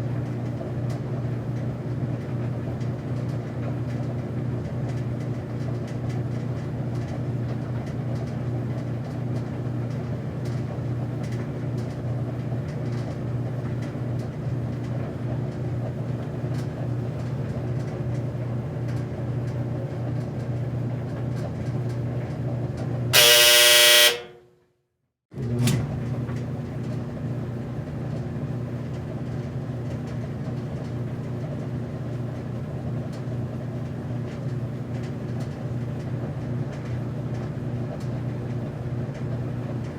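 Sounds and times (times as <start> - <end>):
loud buzzing tone: 23.2 - 24.4.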